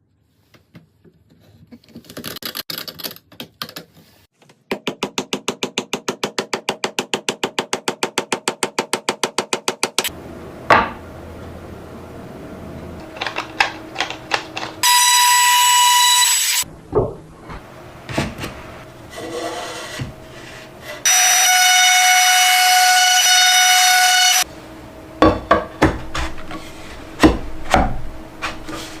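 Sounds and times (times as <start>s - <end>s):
wooden pieces knocking: 13.0s - 14.8s
power tool high whine: 14.8s - 16.6s, 21.0s - 24.4s.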